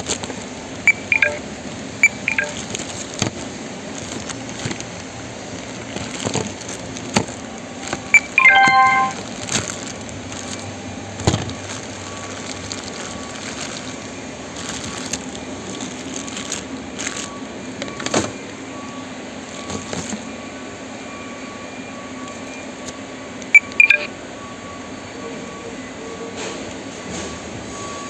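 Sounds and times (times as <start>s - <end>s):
barcode scanner beeps: 0.9s - 2.7s, 8.1s - 9.2s, 23.4s - 24.1s.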